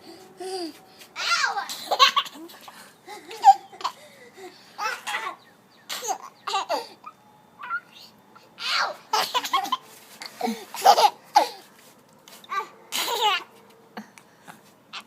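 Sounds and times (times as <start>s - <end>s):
baby laughing: 1.7s - 6.9s, 10.4s - 11.6s.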